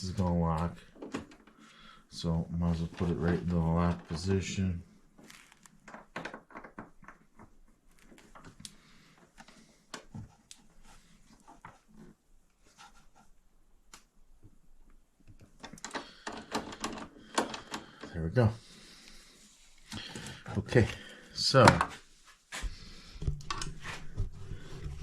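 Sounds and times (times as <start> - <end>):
hardware clicks and taps: 15.2 - 18.2.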